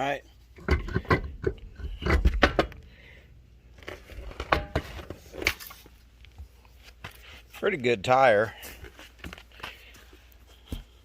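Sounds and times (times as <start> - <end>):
clattering knocks and thumps: 0.6 - 2.8.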